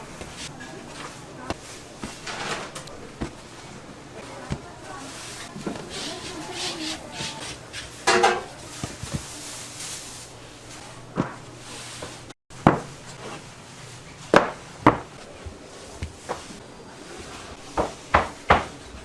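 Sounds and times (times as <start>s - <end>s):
utensils knocking and clacking: 6.6s - 8.6s.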